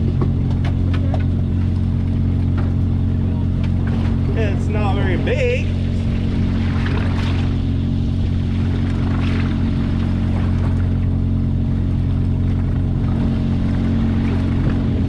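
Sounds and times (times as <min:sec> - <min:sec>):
boat engine droning: 0:00.0 - 0:15.0.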